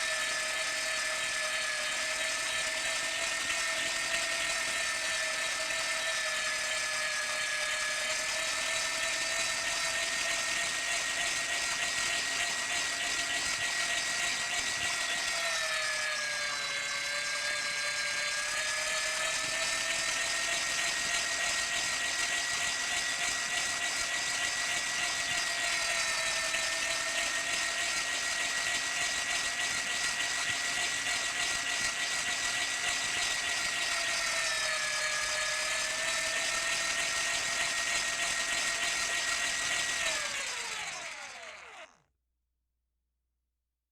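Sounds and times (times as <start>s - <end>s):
meat grinder motor whining: 0.0s - 42.0s.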